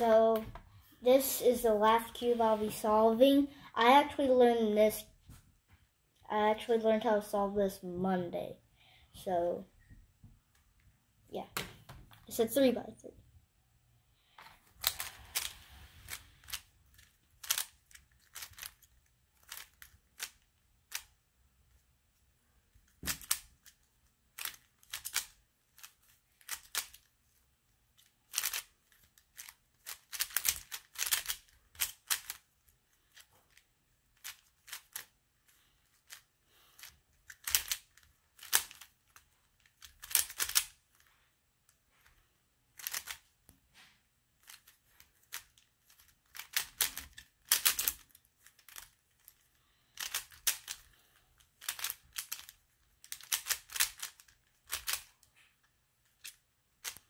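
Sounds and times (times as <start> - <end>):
plastic puzzle cube clicking: 14.8 - 21.2, 22.9 - 27.1, 28.0 - 32.5, 34.2 - 35.1, 35.9 - 41.1, 42.8 - 43.3, 44.4 - 50.9, 51.5 - 55.4, 56.0 - 57.0.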